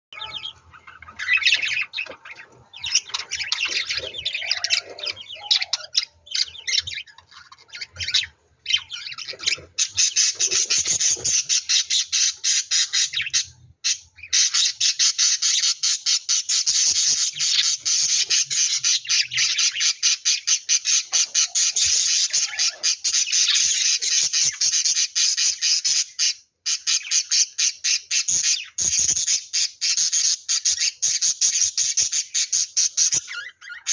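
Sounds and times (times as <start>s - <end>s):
lovebirds chattering and squawking: 0.1s - 33.9s.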